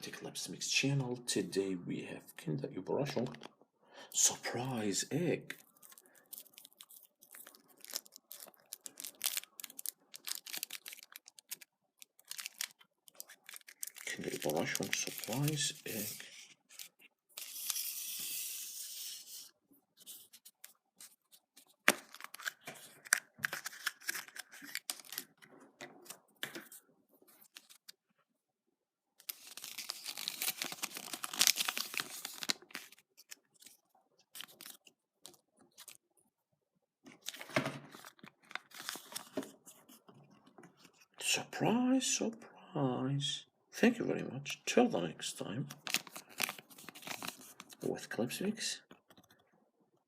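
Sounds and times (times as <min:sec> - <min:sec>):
foil wrapper tearing and crinkling: 0:05.6 - 0:16.0, 0:21.9 - 0:25.4, 0:29.2 - 0:34.9, 0:37.2 - 0:39.3, 0:45.8 - 0:47.8.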